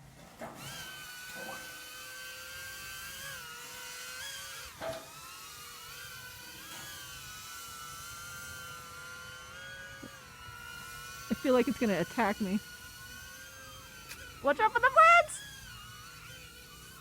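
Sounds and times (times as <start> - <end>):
drone propellers whining: 5.8 - 17.0.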